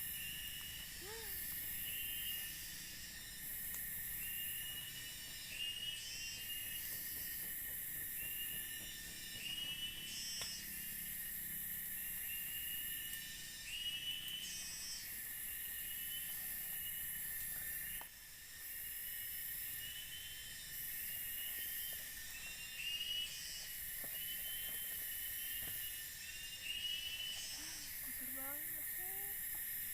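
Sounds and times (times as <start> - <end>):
high-pitched insect buzz: 0.0 - 29.9.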